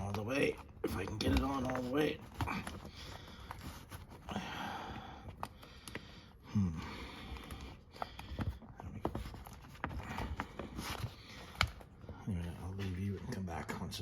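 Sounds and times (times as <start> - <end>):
handling clicks and knocks: 0.0 - 4.3
man breathing hard: 2.4 - 9.2.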